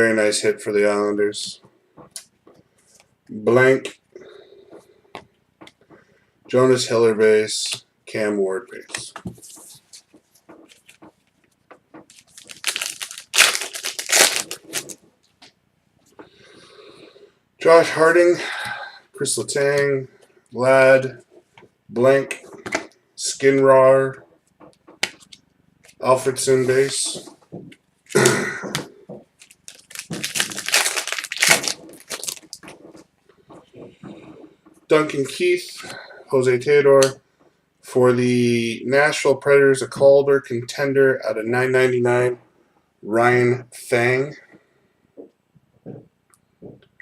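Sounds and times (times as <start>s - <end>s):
wrapper crinkling: 12.0s - 15.0s, 29.4s - 32.9s.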